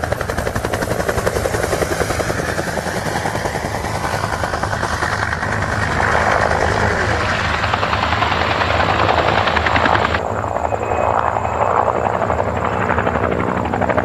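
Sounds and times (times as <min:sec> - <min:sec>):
helicopter rotor blades chopping: 0:00.0 - 0:14.0
low engine drone: 0:03.6 - 0:12.6.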